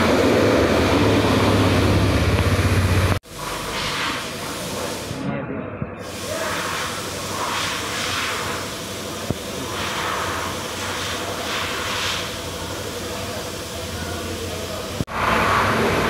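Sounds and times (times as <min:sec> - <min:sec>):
workshop noise: 0:00.0 - 0:16.0
high-pressure spray hissing: 0:00.9 - 0:05.2, 0:06.0 - 0:16.0.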